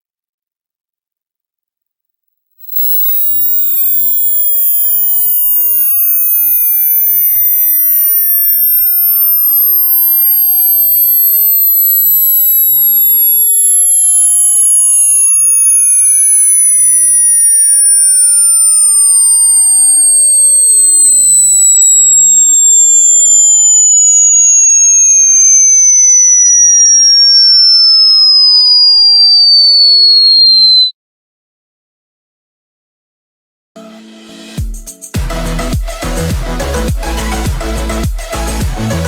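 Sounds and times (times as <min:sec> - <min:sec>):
sine-wave test tone gliding: 0:02.6 - 0:31.0.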